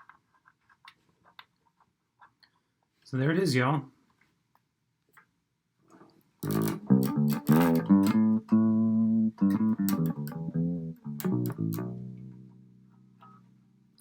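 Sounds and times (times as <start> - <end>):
guitar picked notes: 6.4 - 14.0.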